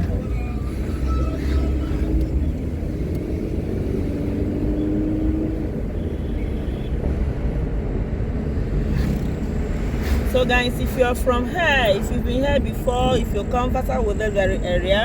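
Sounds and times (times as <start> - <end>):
vehicle driving on road: 0.0 - 15.0.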